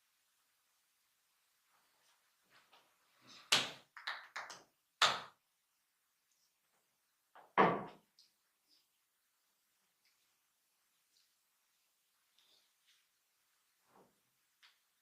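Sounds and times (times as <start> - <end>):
hands slapping body: 3.5 - 5.4.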